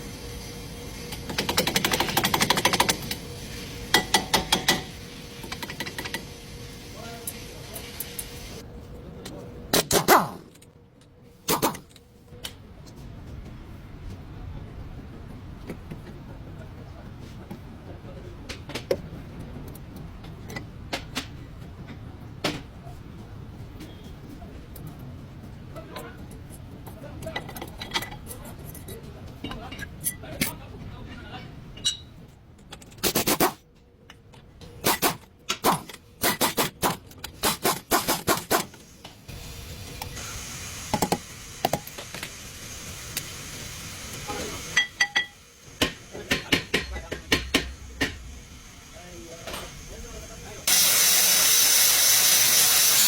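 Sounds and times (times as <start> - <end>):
steady hiss: 2.7 - 8.6, 38.6 - 53.0
sharp clicks and knocks: 45.2 - 48.2.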